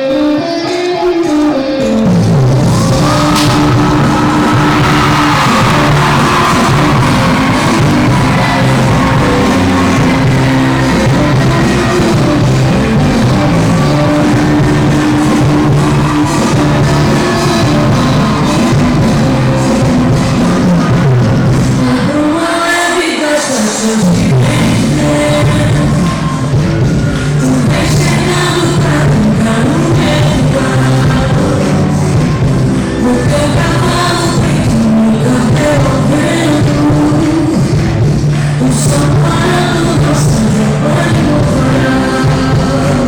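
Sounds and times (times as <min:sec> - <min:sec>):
loud music with singing: 0:00.0 - 0:43.0
bass line: 0:01.0 - 0:22.4, 0:24.0 - 0:43.0.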